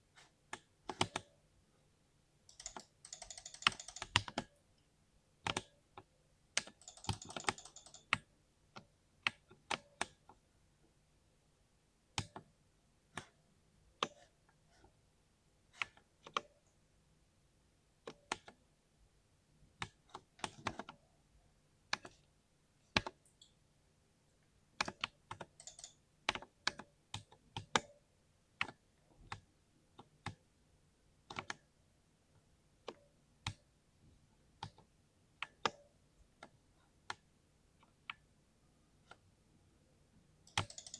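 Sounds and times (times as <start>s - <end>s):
mechanical keyboard keystrokes: 2.5s - 4.5s, 6.6s - 8.3s, 24.8s - 28.0s, 40.4s - 40.9s.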